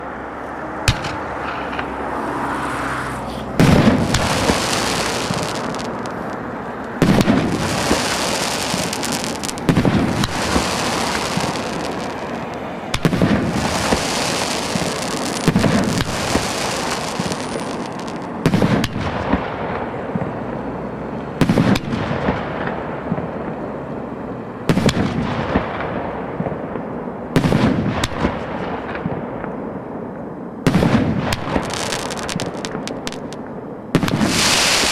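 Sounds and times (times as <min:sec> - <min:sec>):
crackling hiss of fireworks: 0:03.2 - 0:24.0, 0:24.7 - 0:34.9
fireworks bangs: 0:03.6 - 0:20.3, 0:30.7 - 0:34.9.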